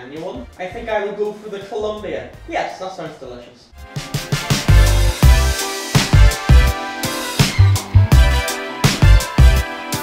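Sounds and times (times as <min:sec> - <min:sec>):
hip-hop music with bass kick drum: 0:03.8 - 0:10.0.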